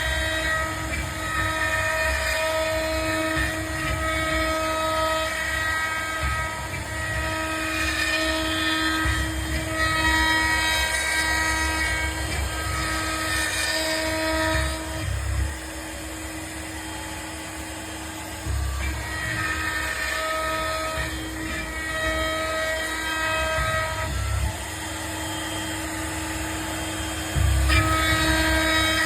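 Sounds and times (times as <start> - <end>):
cnc router spindle whining: 0.0 - 29.0.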